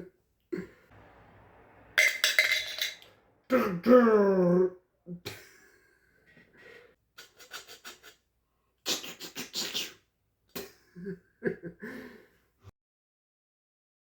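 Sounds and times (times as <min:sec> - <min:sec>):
mouth-made scratchy bursts: 0:07.2 - 0:08.2, 0:08.9 - 0:10.0.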